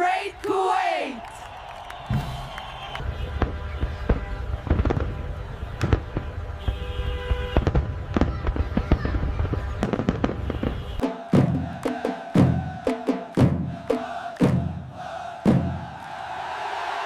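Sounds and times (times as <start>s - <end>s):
fireworks bangs and crackles: 1.9s - 11.0s
music: 11.0s - 15.8s.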